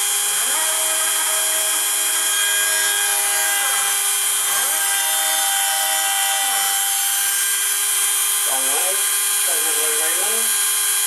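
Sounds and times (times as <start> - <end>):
motors whining in glides: 0.0 - 11.0
rotary tool whining: 0.0 - 11.0.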